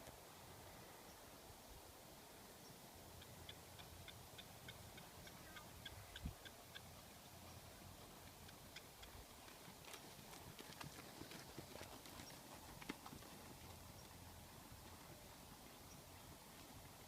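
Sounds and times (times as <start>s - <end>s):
horse hoofbeats: 8.0s - 17.0s.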